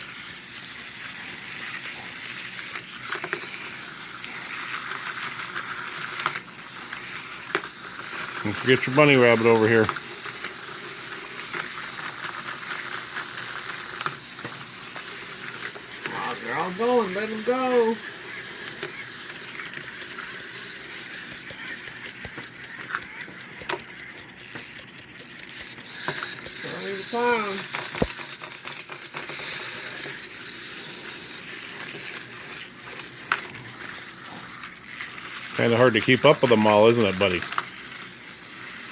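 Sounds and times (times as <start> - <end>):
wind-up toys whirring: 0.0 - 38.9.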